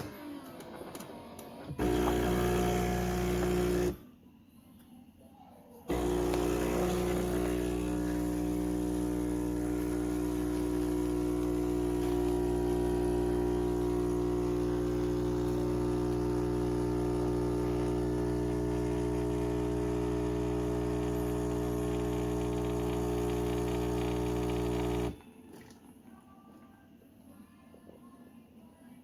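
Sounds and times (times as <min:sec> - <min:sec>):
espresso machine humming: 0:01.8 - 0:04.0, 0:05.9 - 0:25.2.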